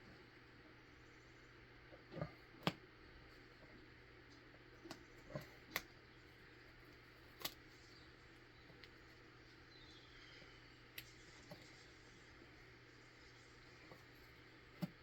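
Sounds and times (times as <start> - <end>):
faint low hum: 0.0 - 15.0.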